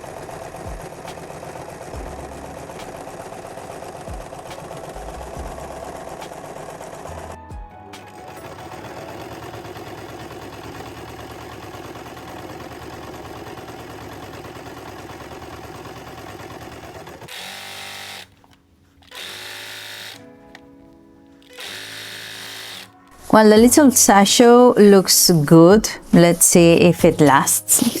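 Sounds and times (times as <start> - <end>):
electric sewing machine stitching: 0.0 - 7.4, 8.0 - 20.6, 21.4 - 24.4.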